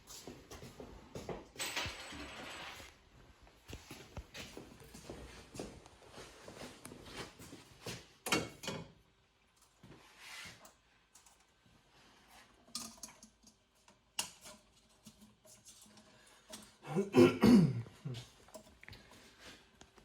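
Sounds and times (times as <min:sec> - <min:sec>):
clatter of knocks and scraping: 0:01.1 - 0:03.0, 0:12.5 - 0:16.8
clicks and rustles of parts: 0:10.5 - 0:11.6, 0:12.5 - 0:16.8.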